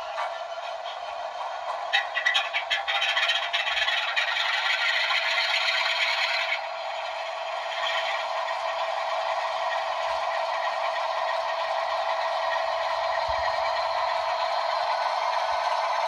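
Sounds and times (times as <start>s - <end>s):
model diesel locomotive sound: 0.0s - 16.0s.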